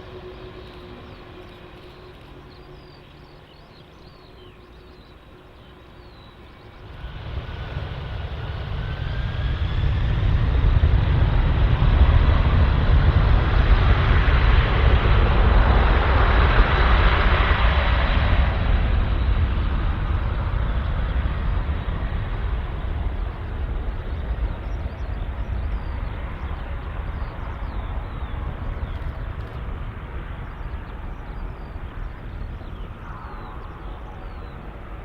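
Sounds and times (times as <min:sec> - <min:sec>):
birds chirping: 0:00.0 - 0:07.0, 0:19.0 - 0:35.0
jet engines roaring: 0:00.0 - 0:35.0.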